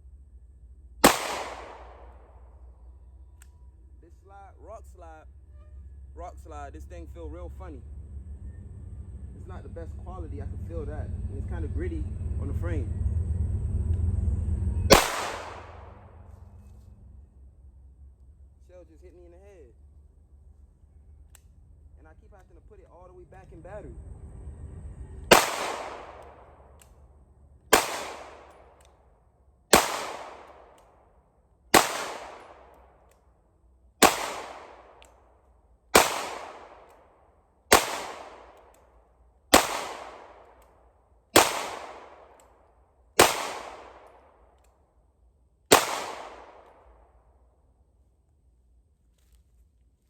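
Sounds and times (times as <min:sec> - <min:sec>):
pistol shots: 0:01.0 - 0:02.5, 0:14.9 - 0:16.4, 0:25.3 - 0:27.1, 0:27.7 - 0:29.0, 0:29.7 - 0:33.2, 0:34.0 - 0:44.6, 0:45.7 - 0:47.1.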